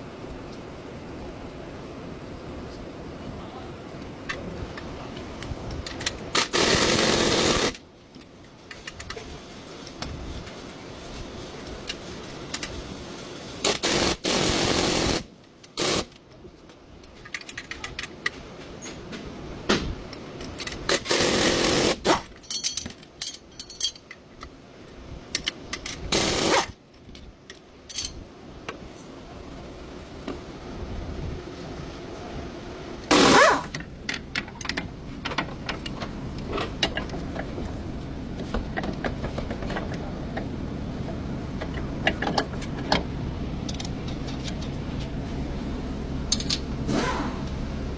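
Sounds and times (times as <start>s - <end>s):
metal clinks: 22.4s - 24.2s.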